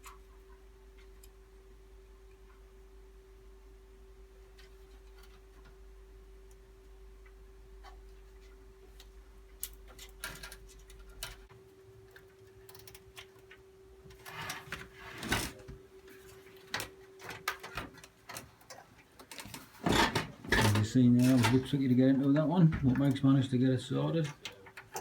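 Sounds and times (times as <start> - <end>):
steady electrical hum: 0.0 - 25.0
cables and parts clicking: 6.4 - 25.0.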